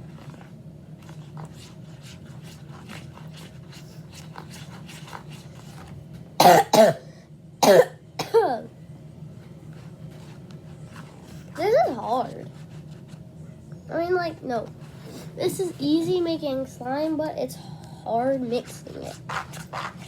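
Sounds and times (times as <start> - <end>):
girl coughing: 6.4 - 8.7.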